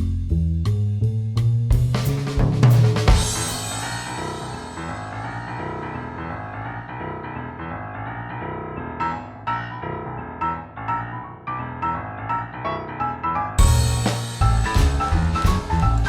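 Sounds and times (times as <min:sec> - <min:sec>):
drum kit: 0:00.0 - 0:06.7, 0:13.6 - 0:16.0
piano chords and notes: 0:01.8 - 0:16.0.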